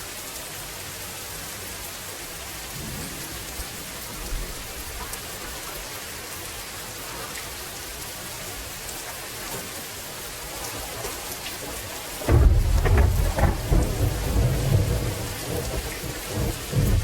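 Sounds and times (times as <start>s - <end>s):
steady rainfall: 0.0s - 17.0s
deep thunder rumble: 12.2s - 17.0s.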